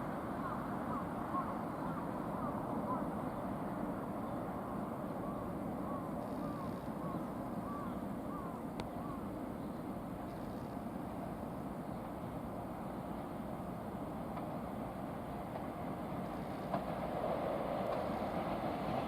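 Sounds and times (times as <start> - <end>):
bird calling: 5.2 - 9.2
freight train rumbling past: 11.0 - 19.0.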